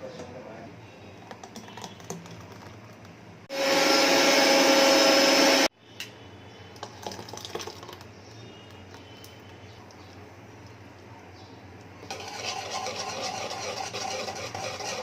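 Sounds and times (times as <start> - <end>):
blender running: 3.5 - 5.7.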